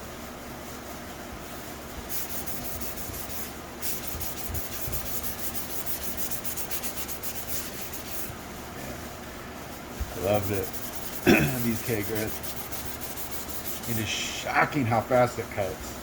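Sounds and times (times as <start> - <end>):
sandpaper scratching: 2.1 - 8.3, 10.2 - 14.2.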